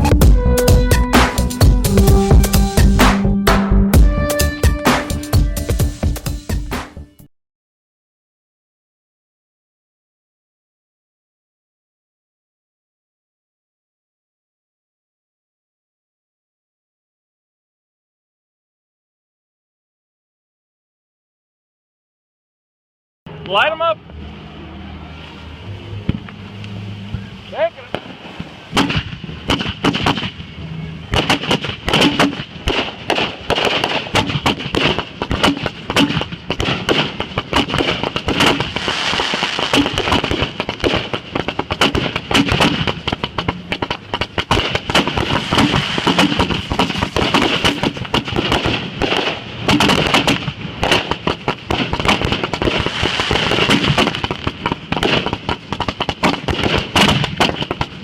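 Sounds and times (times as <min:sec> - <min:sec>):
fireworks bangs and crackles: 0:27.1 - 0:58.0.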